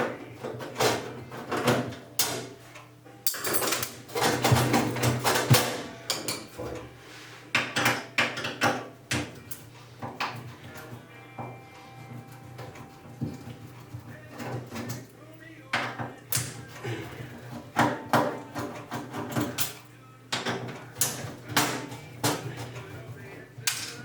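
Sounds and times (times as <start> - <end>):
sheet metal clanking and rattling: 3.3 - 6.8.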